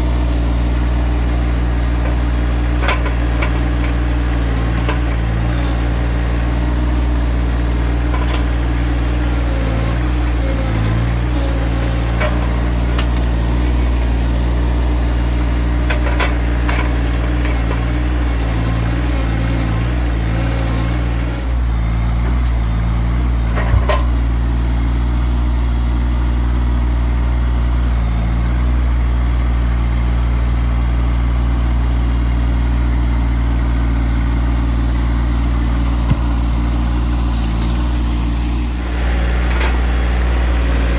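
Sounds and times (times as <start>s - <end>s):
tractor engine running: 0.0s - 40.9s
sharp knocks on logs: 36.0s - 36.4s.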